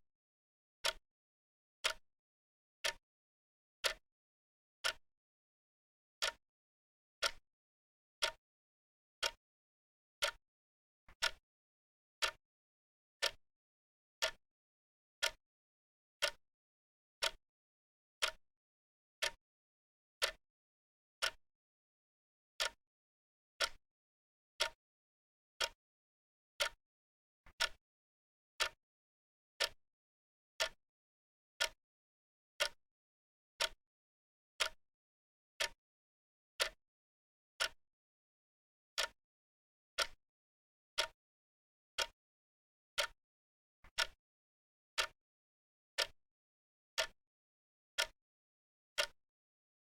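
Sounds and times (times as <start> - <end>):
clock ticking: 8.2 - 8.4, 11.2 - 11.4, 12.2 - 12.4, 14.2 - 14.4, 27.6 - 27.8, 36.6 - 36.8, 43.9 - 44.2, 45.0 - 45.2.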